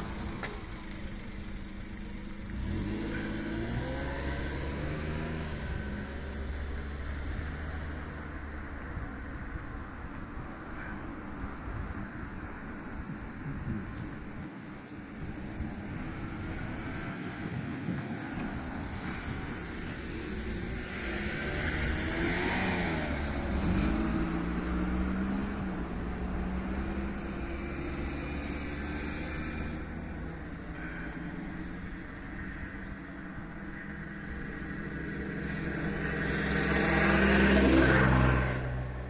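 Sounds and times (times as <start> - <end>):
vehicle engine passing by: 0.0 - 8.8, 16.0 - 32.0, 33.9 - 39.0.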